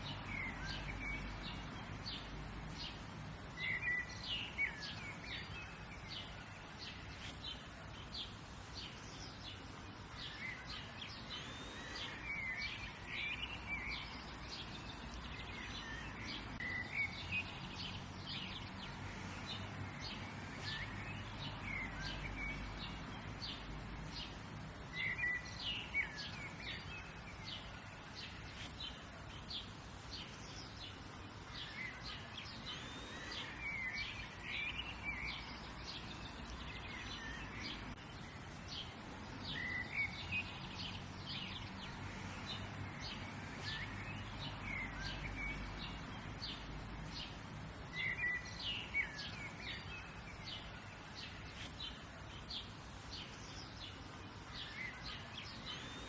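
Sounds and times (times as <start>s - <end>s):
birds chirping: 0.0s - 56.0s
faint background hiss: 0.0s - 56.0s.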